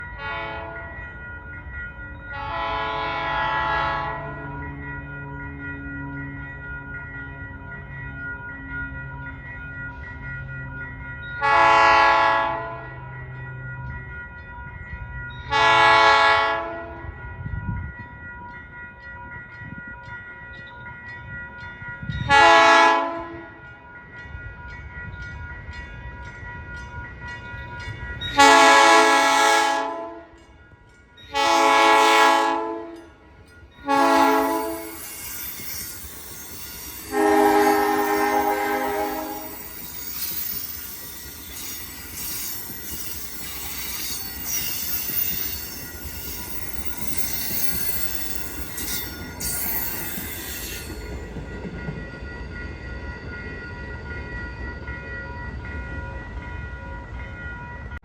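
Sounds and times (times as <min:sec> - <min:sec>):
train horn blasts: 0:00.2 - 0:00.8, 0:02.3 - 0:04.4, 0:11.4 - 0:12.9, 0:15.5 - 0:17.1, 0:22.3 - 0:23.6, 0:28.4 - 0:30.4, 0:31.3 - 0:33.1, 0:33.8 - 0:35.0, 0:37.1 - 0:39.6
train passing rushing noise: 0:21.0 - 0:57.2.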